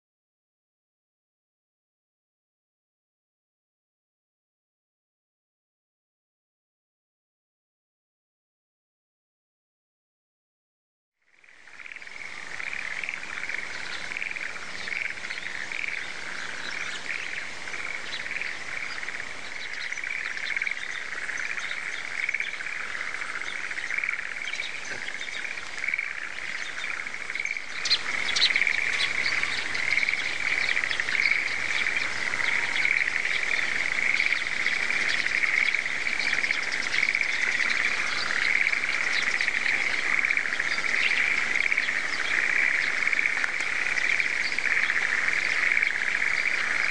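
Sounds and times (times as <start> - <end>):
chorus of frogs calling: 11.2 - 46.9
birds chirping: 11.4 - 46.9.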